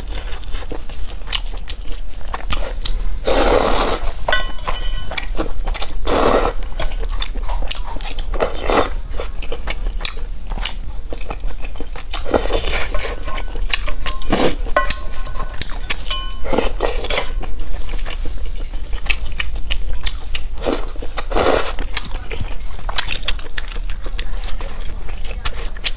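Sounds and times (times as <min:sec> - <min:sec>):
chewing with mouth clicks: 0:00.0 - 0:25.9
utensils clinking on dish: 0:04.3 - 0:05.5, 0:12.6 - 0:17.5.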